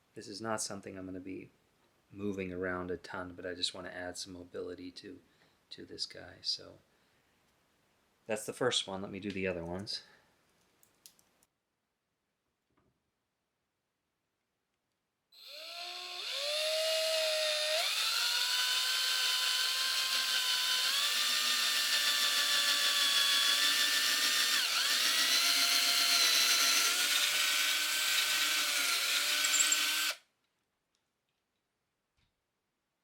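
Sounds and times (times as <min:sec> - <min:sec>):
cordless drill whining: 0:15.4 - 0:30.2.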